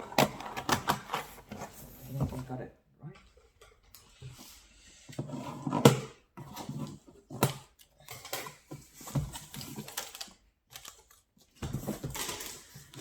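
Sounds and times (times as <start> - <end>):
packaging rustling: 9.3 - 11.2.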